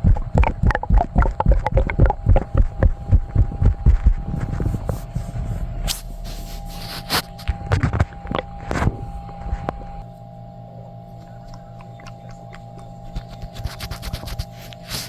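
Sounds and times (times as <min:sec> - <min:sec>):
stomach gurgling: 0:00.0 - 0:05.5, 0:07.4 - 0:10.0, 0:11.1 - 0:14.6
steady background hum: 0:00.0 - 0:15.0.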